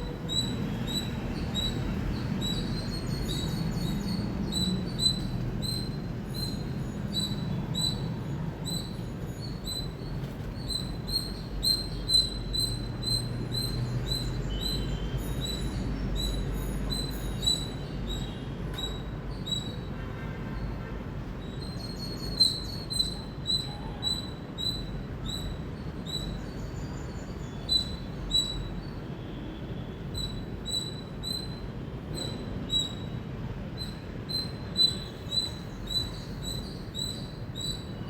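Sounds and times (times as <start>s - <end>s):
squirrel chirping: 10.6s - 14.8s, 27.5s - 28.9s, 33.8s - 38.0s.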